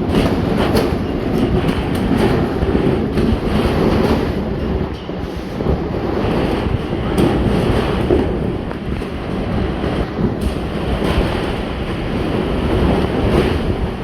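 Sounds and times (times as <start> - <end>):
sheet metal rattling and banging: 0.0 - 14.0
strong wind rumbling: 0.0 - 14.0.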